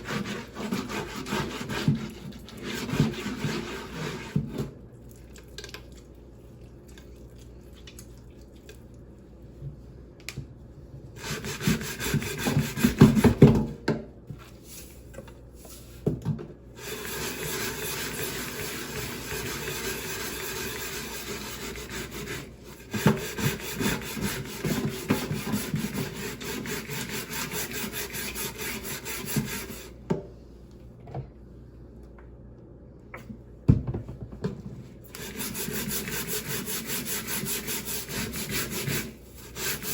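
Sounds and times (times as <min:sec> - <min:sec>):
salt scrubbing on wooden board: 0:35.2 - 0:39.9.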